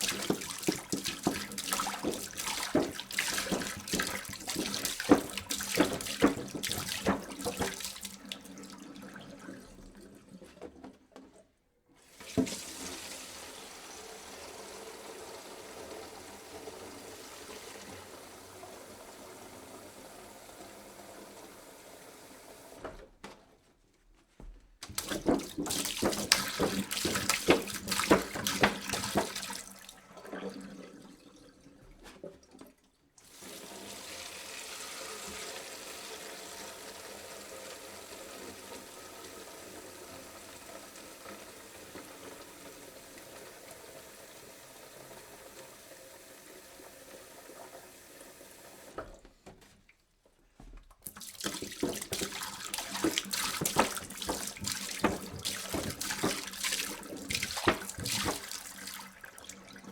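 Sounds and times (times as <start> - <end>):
water pouring into a jug: 0.0 - 10.7, 24.9 - 49.2, 51.0 - 59.9.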